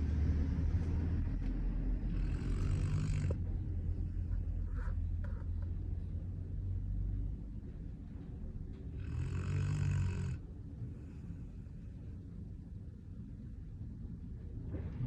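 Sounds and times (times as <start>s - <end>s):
deep snoring: 2.0s - 3.6s, 9.0s - 11.6s.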